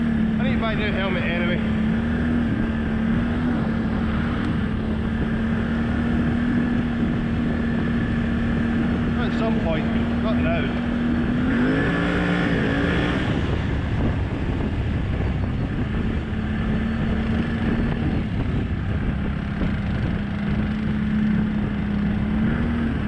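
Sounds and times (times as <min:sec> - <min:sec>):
atv engine running: 0:00.0 - 0:23.0.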